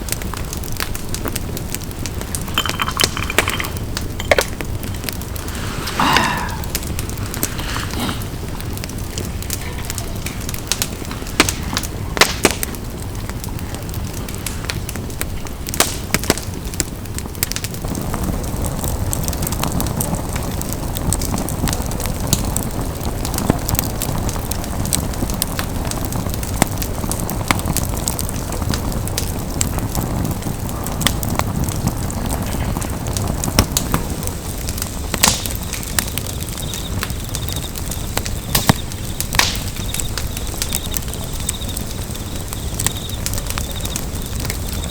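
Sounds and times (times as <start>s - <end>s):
campfire crackling: 0.0s - 44.9s
sharp pops and snaps: 3.3s - 12.8s, 34.8s - 44.9s.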